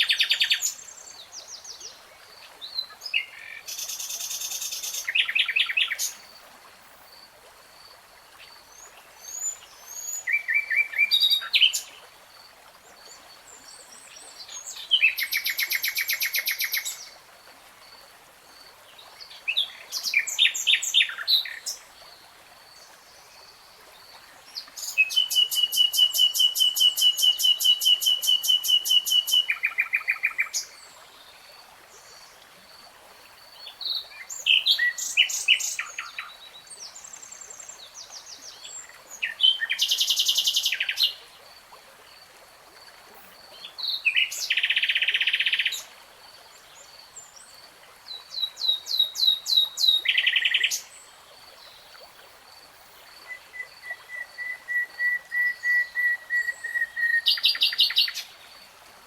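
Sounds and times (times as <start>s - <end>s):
songbird singing: 0.0s - 7.1s, 8.4s - 12.0s, 24.1s - 31.4s, 33.4s - 41.3s, 43.1s - 45.9s, 48.1s - 58.6s.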